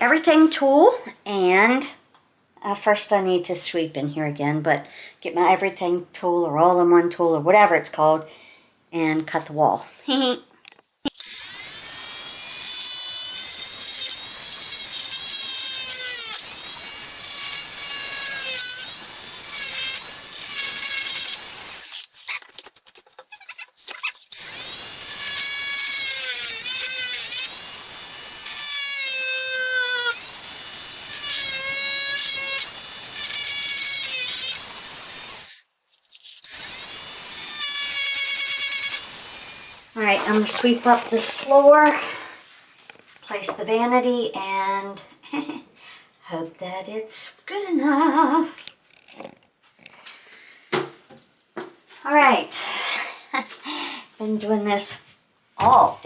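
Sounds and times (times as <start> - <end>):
multi-tool cutting drywall: 11.1 - 42.0.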